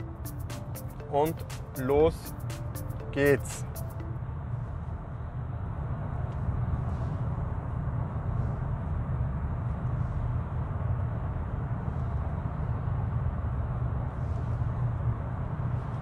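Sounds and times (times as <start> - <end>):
car cabin road and engine rumble: 3.0 - 16.0.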